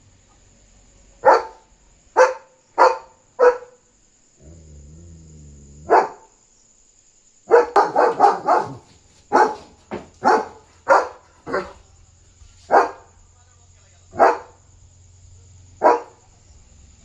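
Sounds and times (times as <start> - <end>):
dog barking: 1.2 - 3.8, 5.8 - 6.4, 7.5 - 13.3, 14.1 - 14.8, 15.6 - 16.5.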